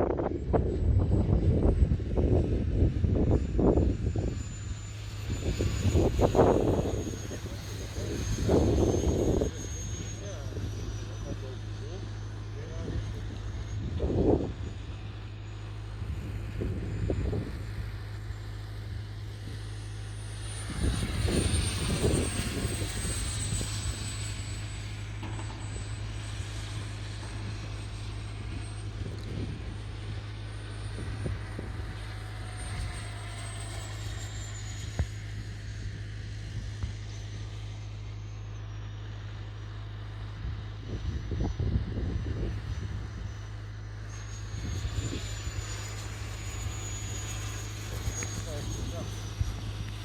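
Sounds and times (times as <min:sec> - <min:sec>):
jet turbine whine: 0:00.0 - 0:50.0.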